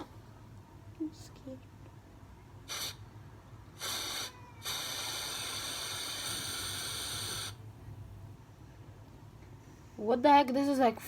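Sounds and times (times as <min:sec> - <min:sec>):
aerosol spray can hissing: 0:02.7 - 0:03.0, 0:03.8 - 0:07.6.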